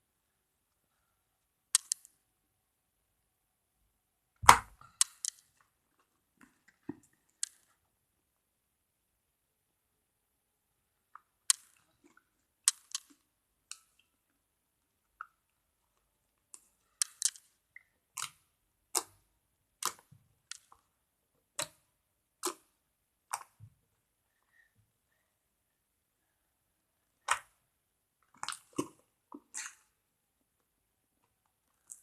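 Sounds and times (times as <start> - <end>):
slime popping and clicking: 1.8 - 2.1, 4.4 - 5.4, 12.7 - 13.1.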